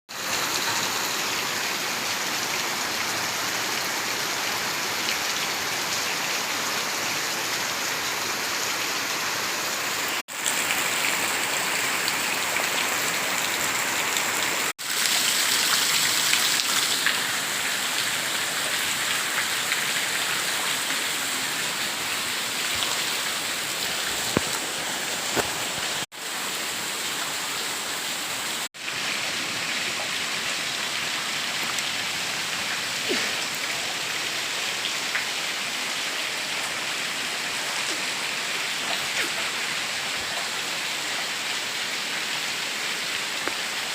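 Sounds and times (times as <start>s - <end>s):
rain pattering: 0.1s - 27.4s, 28.7s - 43.9s.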